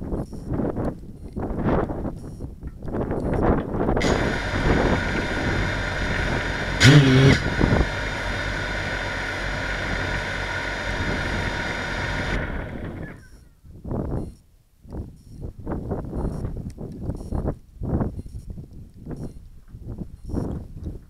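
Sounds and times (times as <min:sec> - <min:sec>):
wind gusts: 0:00.0 - 0:14.3
drone motors whining: 0:03.2 - 0:13.4
brief loud pitched sound: 0:04.0 - 0:10.6.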